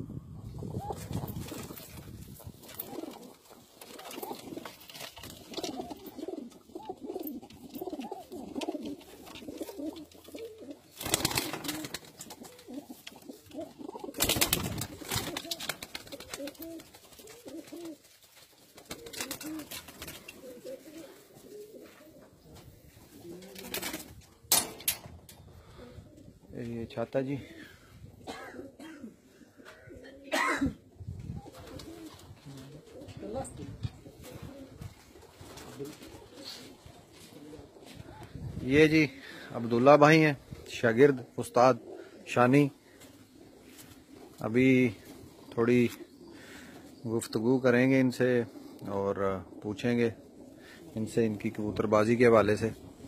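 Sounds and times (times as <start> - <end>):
pigeons cooing: 0.0 - 24.2, 25.3 - 26.5, 27.3 - 53.0.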